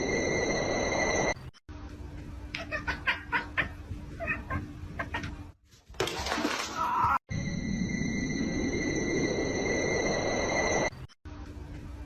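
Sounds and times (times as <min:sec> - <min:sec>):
music: 0:01.7 - 0:05.1, 0:11.3 - 0:12.0.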